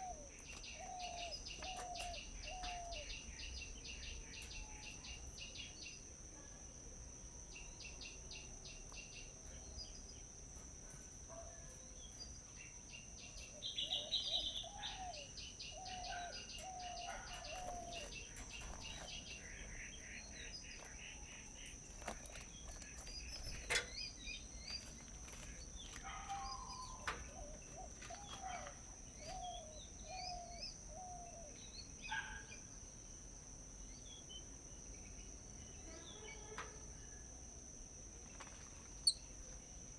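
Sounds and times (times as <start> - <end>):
birds chirping and calling: 0.0 - 6.0, 11.3 - 32.6.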